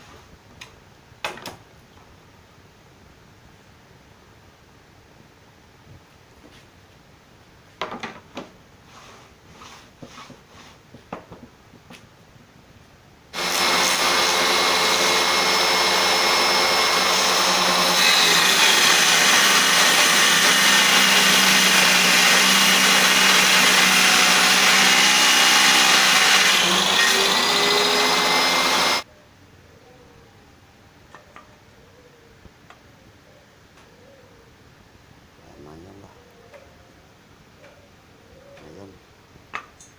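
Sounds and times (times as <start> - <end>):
table saw motor running: 13.4 - 29.0.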